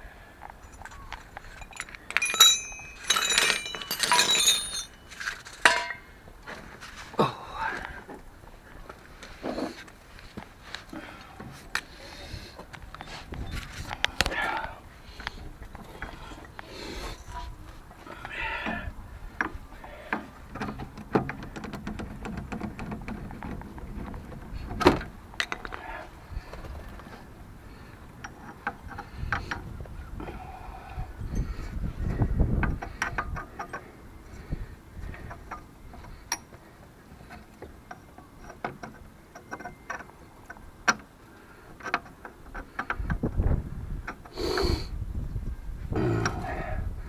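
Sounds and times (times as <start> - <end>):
metal tools clinking and clattering: 0.6 - 6.1.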